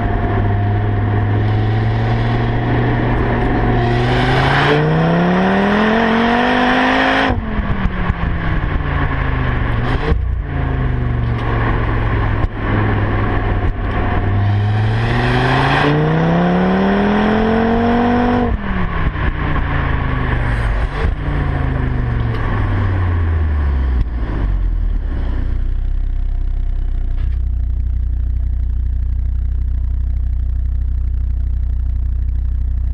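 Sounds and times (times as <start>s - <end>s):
car engine accelerating: 0.0s - 32.9s
exhaust pops: 7.2s - 15.1s, 18.4s - 23.1s, 23.9s - 25.7s, 26.6s - 32.9s.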